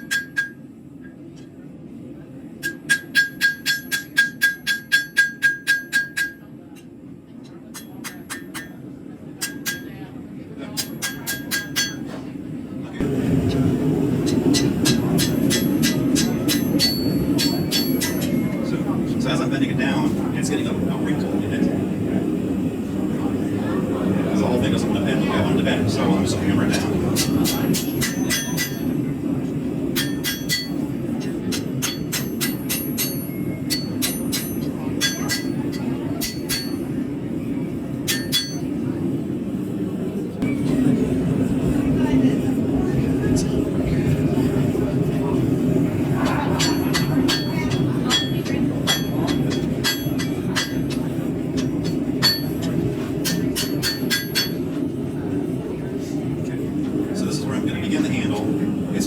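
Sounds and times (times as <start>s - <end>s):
hammer striking steel on anvil: 0.0s - 0.7s, 2.6s - 6.5s, 7.7s - 8.8s, 9.4s - 10.0s, 10.8s - 12.2s, 14.2s - 18.6s, 26.7s - 29.0s, 29.9s - 37.0s, 38.0s - 38.8s, 46.3s - 54.8s
steady low rumble: 13.0s - 33.8s.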